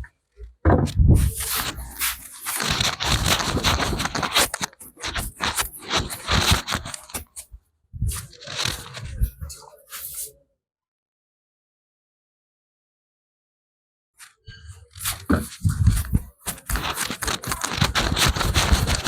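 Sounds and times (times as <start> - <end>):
hands rubbing and scratching hair: 1.2 - 7.4, 15.0 - 19.0.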